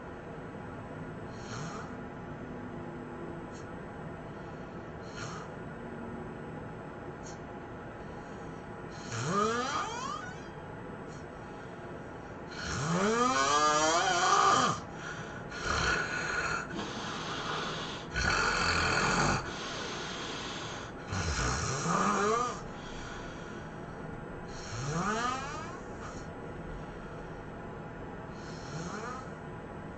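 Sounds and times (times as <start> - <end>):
person snoring loudly: 1.4 - 1.9, 9.0 - 10.4, 12.5 - 14.9, 15.5 - 22.9, 24.5 - 26.3, 28.4 - 29.3.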